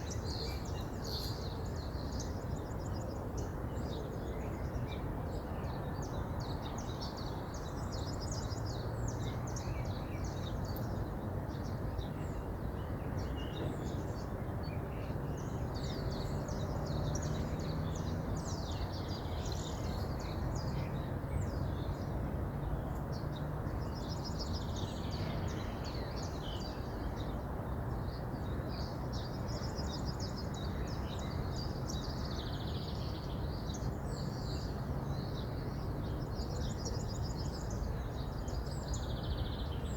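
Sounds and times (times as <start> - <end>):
small birds chirping: 0.0 - 3.0.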